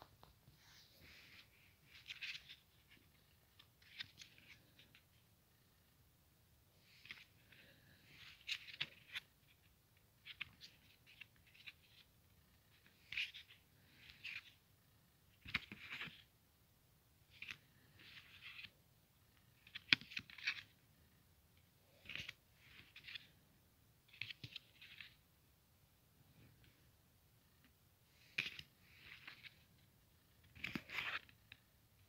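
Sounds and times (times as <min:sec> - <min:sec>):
rustling and scraping: 0:00.0 - 0:05.7, 0:27.6 - 0:31.7.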